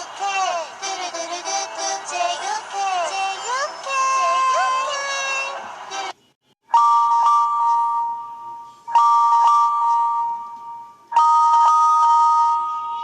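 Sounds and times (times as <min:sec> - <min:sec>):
electronic two-tone phone ring: 0:06.8 - 0:13.0.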